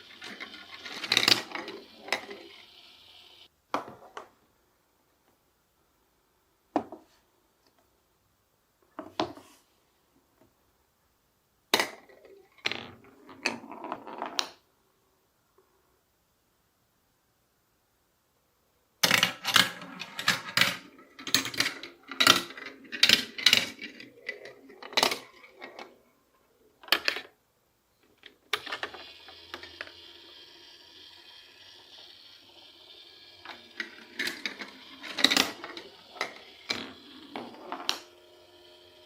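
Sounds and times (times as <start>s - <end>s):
marbles clacking: 0.0s - 3.3s, 28.6s - 39.0s
marble rolling with ringing: 0.0s - 3.5s, 28.6s - 39.0s.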